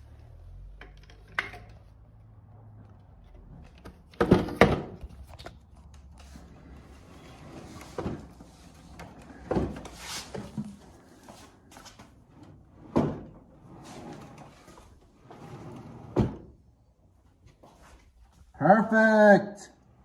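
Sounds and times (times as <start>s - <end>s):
drawer knocking shut: 4.2s - 5.0s
wooden drawer sliding: 6.3s - 16.6s.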